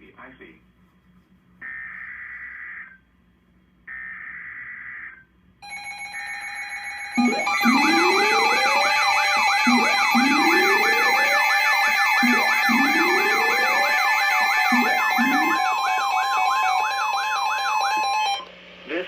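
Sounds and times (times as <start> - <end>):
warbling siren: 3.9 - 18.5
screechy data tones: 5.6 - 18.4
rising siren wail: 5.6 - 18.5
steady alert tones: 5.6 - 18.5.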